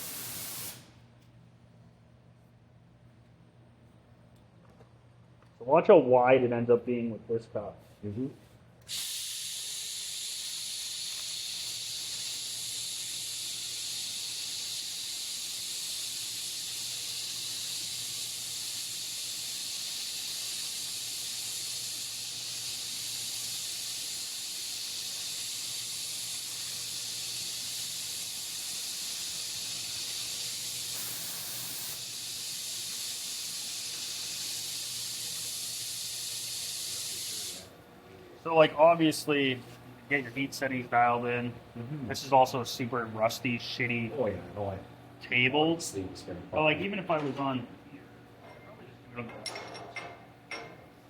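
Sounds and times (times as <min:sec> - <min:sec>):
welding arc hissing: 0:00.0 - 0:01.0, 0:08.8 - 0:37.8.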